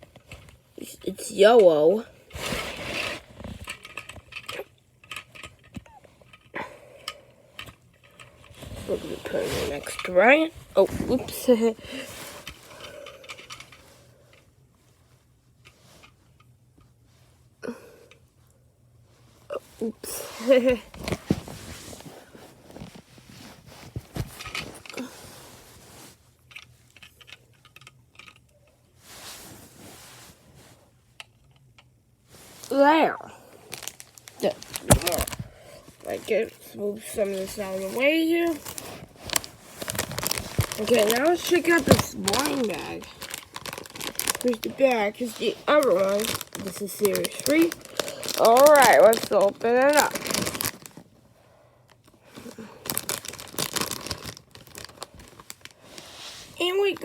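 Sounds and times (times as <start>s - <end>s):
plastic toy pieces rustling: 7.6s - 13.9s, 20.4s - 25.0s, 26.5s - 28.5s, 33.7s - 51.1s, 52.0s - 57.0s.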